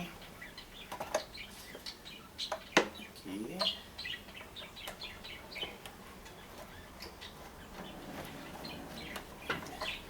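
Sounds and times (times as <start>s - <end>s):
birds chirping: 0.0s - 10.0s.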